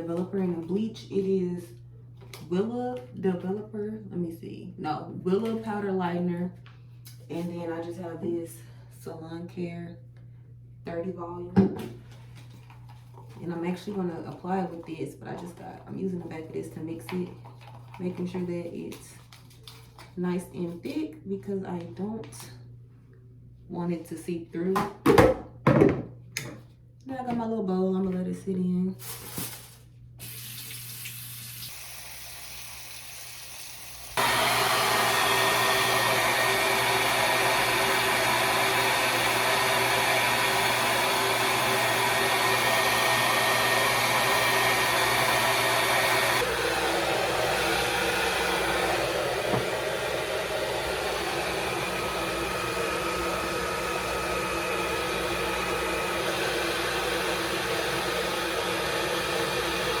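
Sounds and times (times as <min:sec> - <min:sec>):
hair dryer running: 0:31.6 - 1:00.0.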